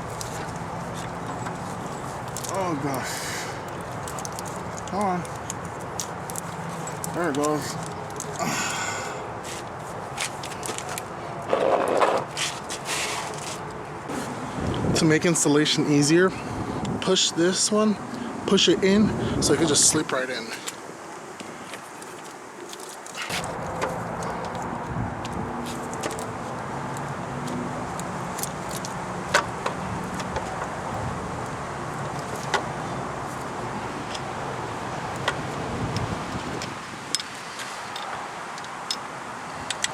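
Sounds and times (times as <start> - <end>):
scraping rustle: 0.0 - 8.5, 9.4 - 14.4, 21.4 - 26.6
clicks and knocks of tools: 35.1 - 39.9.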